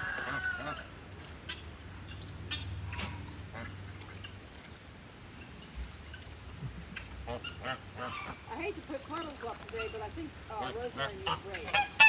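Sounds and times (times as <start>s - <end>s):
ducks geese and chickens calling: 0.0s - 12.0s
low steady background hum: 0.0s - 12.0s.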